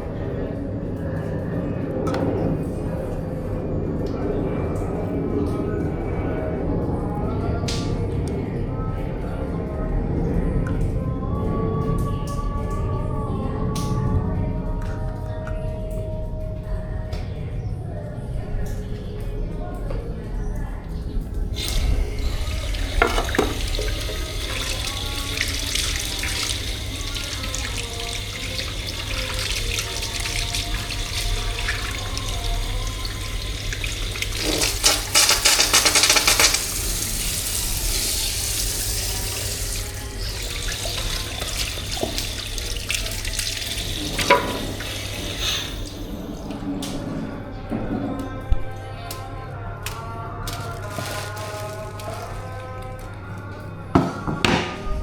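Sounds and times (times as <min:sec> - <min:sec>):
tap water running into sink: 0:21.5 - 0:46.4.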